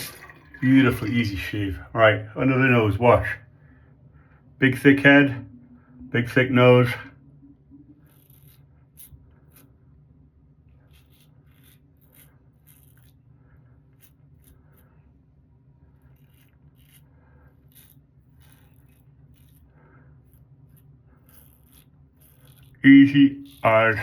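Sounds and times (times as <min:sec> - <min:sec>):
razor scraping stubble: 0:08.0 - 0:09.8, 0:10.7 - 0:15.2, 0:15.8 - 0:24.0.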